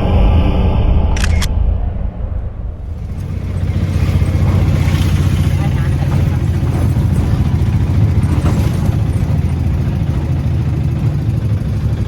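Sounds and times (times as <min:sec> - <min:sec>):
auto-rickshaw engine running: 0:02.8 - 0:12.0.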